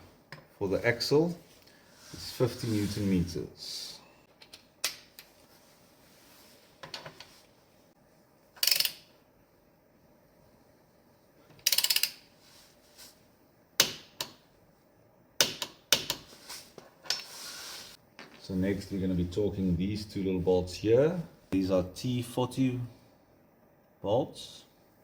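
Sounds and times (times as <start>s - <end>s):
rapid ratchet clicks: 8.6s - 9.0s, 11.6s - 12.2s.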